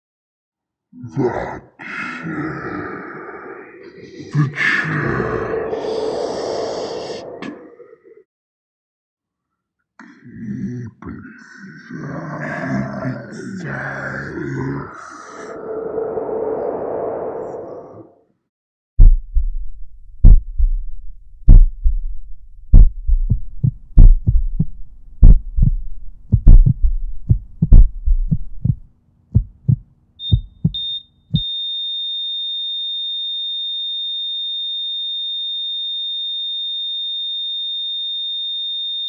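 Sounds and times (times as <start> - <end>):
heart monitor flatline tone: 19.0 - 19.6, 20.2 - 20.9, 21.5 - 22.1, 22.7 - 28.8, 29.4 - 31.6
heartbeat thumps: 19.0 - 31.4.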